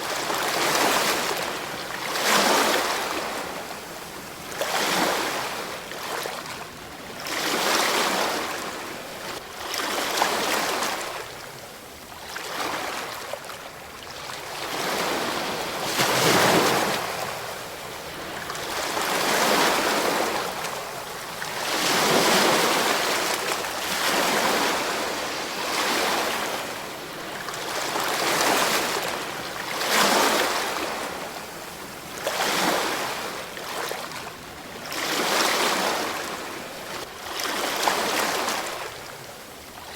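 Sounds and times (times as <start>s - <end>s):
ocean waves washing in: 18.6s - 29.6s.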